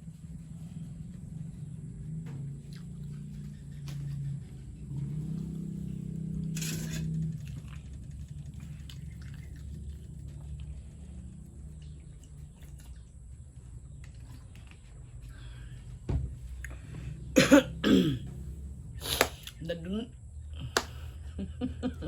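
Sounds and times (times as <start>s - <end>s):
steady low hum: 0.0s - 22.0s
person coughing: 17.4s - 18.3s.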